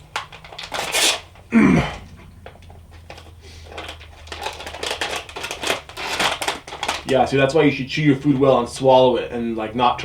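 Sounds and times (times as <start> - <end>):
man coughing hard: 1.5 - 2.2.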